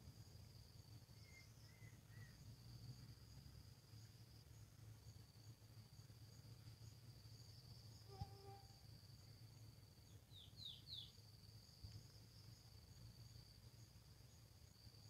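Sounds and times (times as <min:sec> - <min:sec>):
crickets trilling: 0:00.0 - 0:15.0
bird chirping: 0:10.3 - 0:11.2.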